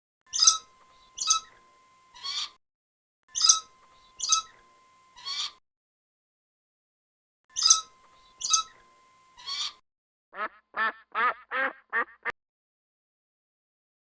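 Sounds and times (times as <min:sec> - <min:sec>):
shrill animal calls: 0:02.2 - 0:02.6, 0:05.2 - 0:05.6, 0:09.4 - 0:09.8.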